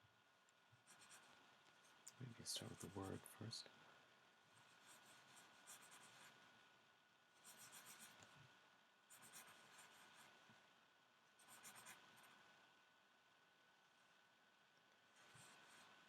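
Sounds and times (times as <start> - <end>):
pen scratching on paper: 0.8 - 3.2, 4.6 - 6.4, 7.4 - 8.3, 9.1 - 10.4, 11.4 - 12.3, 15.2 - 16.0.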